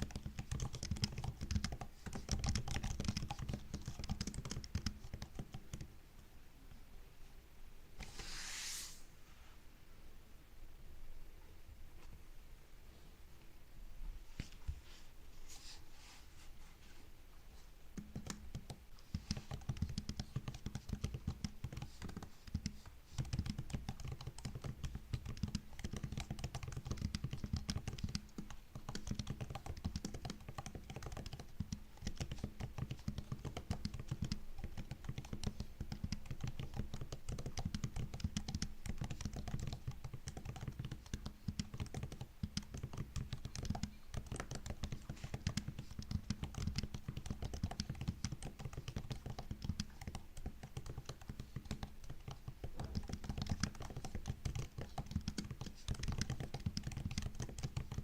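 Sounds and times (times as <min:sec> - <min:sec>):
fast typing on laptop keyboard: 0:00.0 - 0:05.9, 0:18.0 - 0:58.0.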